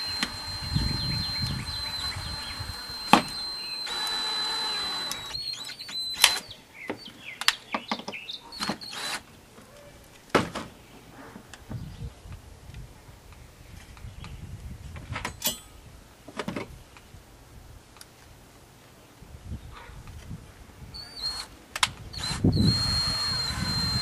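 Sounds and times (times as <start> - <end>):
drill motor whining: 0.0 - 6.5, 8.6 - 9.2, 21.0 - 21.5, 22.2 - 24.0.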